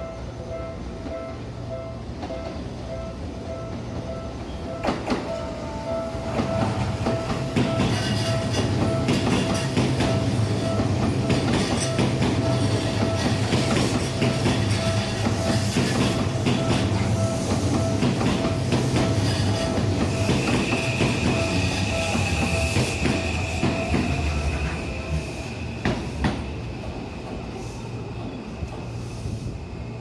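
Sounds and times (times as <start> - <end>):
steady high tone: 0.0 - 25.8
train rumble: 0.0 - 30.0
train wheels clacking over rail joints: 6.4 - 24.3.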